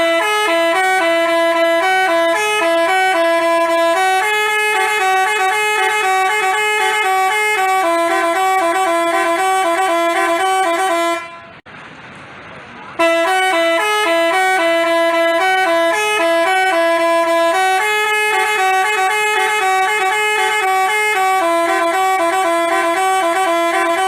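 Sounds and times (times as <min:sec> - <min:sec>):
multi-tone bus horn tune: 0:00.0 - 0:11.7, 0:13.0 - 0:24.0.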